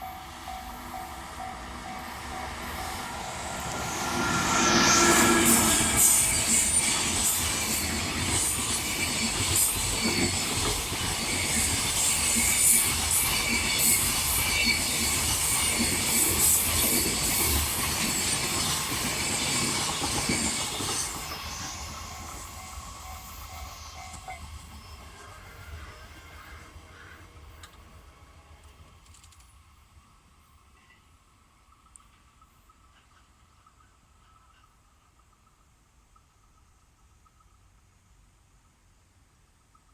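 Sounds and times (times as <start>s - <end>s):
high wheel squeal: 0.0s - 8.4s.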